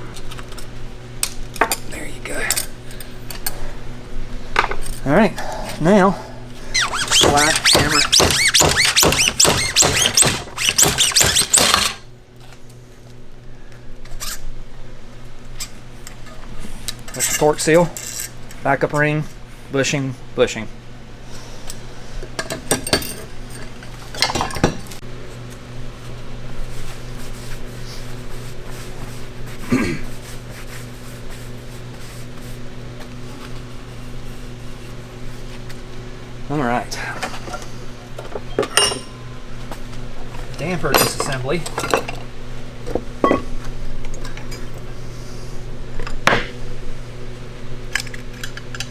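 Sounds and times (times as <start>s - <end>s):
steady low hum: 0.0s - 48.9s.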